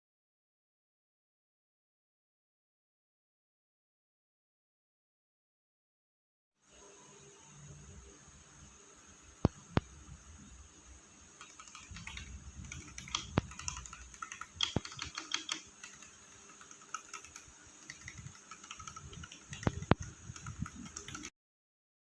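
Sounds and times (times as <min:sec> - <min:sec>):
mechanical keyboard typing: 0:11.4 - 0:21.3.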